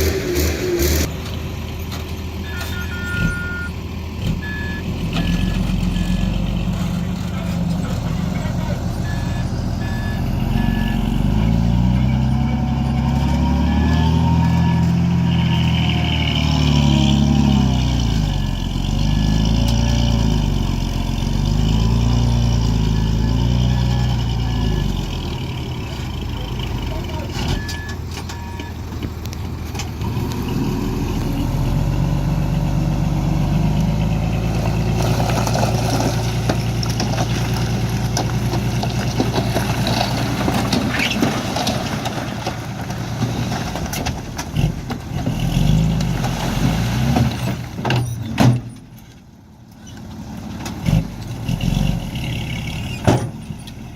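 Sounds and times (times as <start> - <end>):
diesel truck engines revving: 0.0 - 53.9
reversing alarm beeping: 2.4 - 3.8, 9.0 - 11.3.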